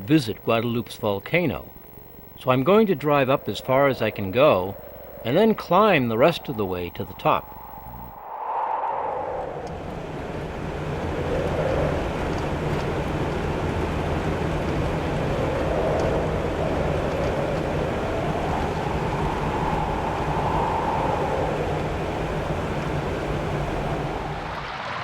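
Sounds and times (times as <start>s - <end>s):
road noise: 2.7s - 25.0s
car engine droning: 8.9s - 25.0s.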